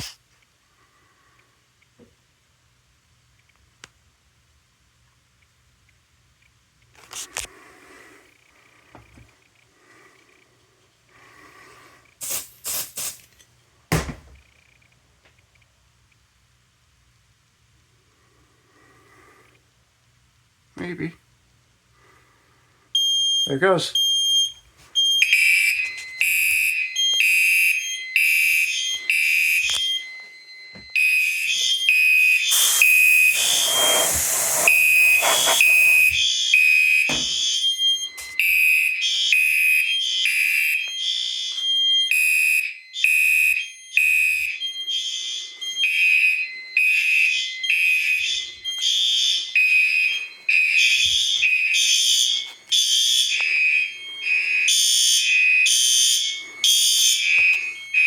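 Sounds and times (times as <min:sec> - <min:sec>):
pulsing fire alarm horns: 0:23.0 - 0:58.0
harsh rasping alarm blast: 0:31.0 - 0:40.6, 0:45.0 - 0:58.0.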